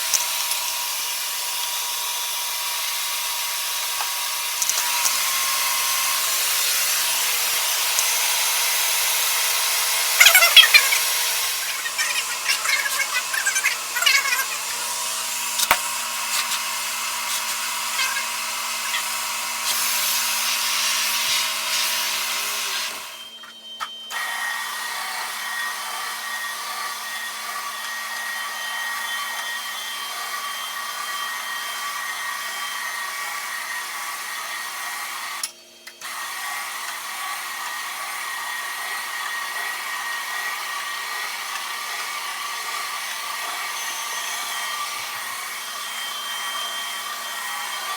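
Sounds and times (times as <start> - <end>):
extraction wand hissing: 4.6 - 23.0
machine hum: 4.6 - 23.3.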